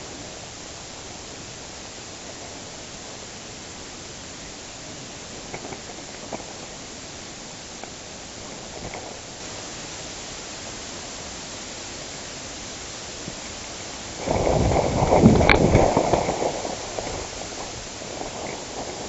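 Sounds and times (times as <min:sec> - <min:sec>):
steady hiss: 0:00.0 - 0:19.0
loud rough rustling: 0:13.2 - 0:19.0.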